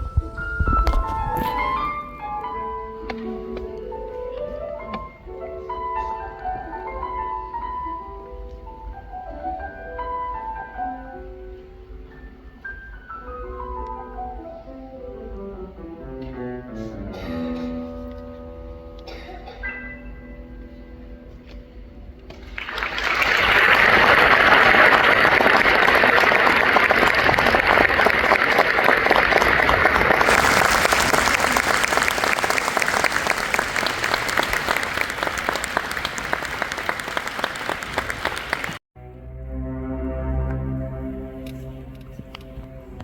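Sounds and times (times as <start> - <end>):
orchestra playing: 20.0 - 43.0
audience applauding: 22.4 - 38.8.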